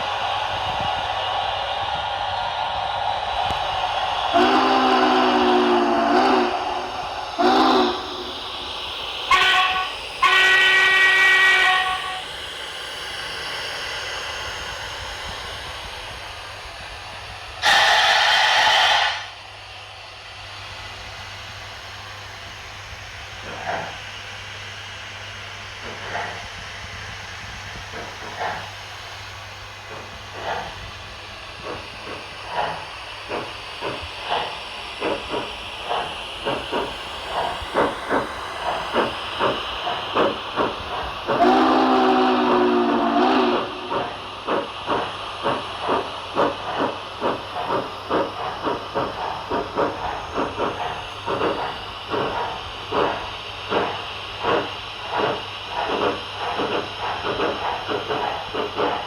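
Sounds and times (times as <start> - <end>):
loud blow-off of steam: 0.0 - 59.0
steam hissing: 0.0 - 59.0
steam locomotive exhaust chuffs: 0.0 - 59.0
steam whistle: 4.3 - 8.3, 9.3 - 12.3, 17.6 - 19.3, 41.4 - 44.0.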